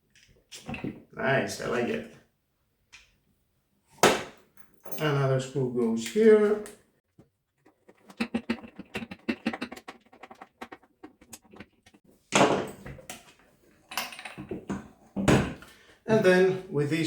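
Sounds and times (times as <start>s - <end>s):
screwdriver scrape: 7.6s - 12.0s.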